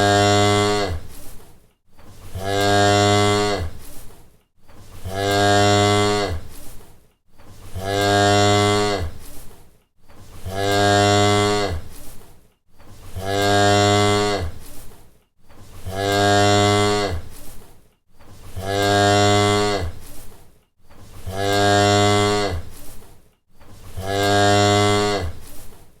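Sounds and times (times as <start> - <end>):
cow mooing: 0.0 - 1.2, 2.3 - 3.8, 5.0 - 6.6, 7.7 - 9.2, 10.4 - 12.0, 13.2 - 14.6, 15.8 - 17.3, 18.5 - 20.1, 21.2 - 22.8, 23.9 - 25.6.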